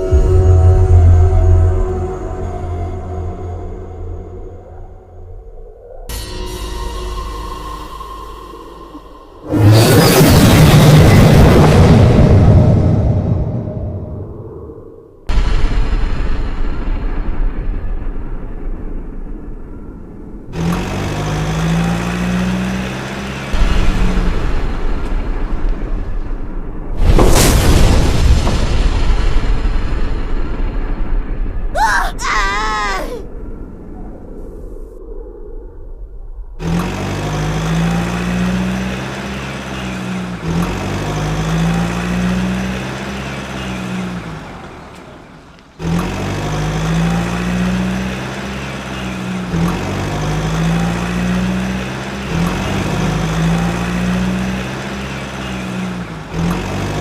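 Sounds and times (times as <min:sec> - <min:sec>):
steady engine hum: 0:00.0 - 0:14.2, 0:19.8 - 0:26.9, 0:36.5 - 0:57.0
heavy engine rumble: 0:36.6 - 0:57.0.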